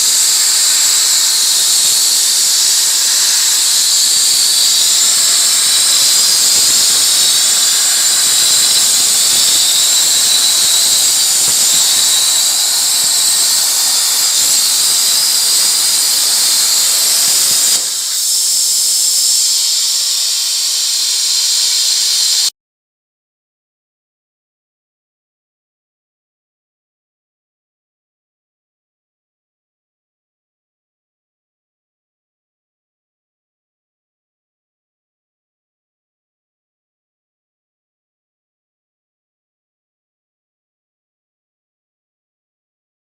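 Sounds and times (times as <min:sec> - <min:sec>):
plasma cutter hissing: 0:00.0 - 0:22.5.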